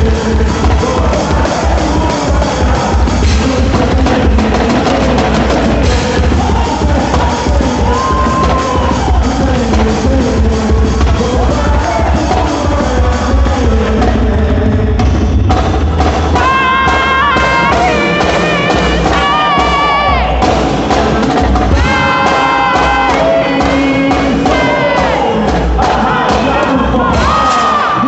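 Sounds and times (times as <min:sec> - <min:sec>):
loud dance music: 0:00.0 - 0:28.0.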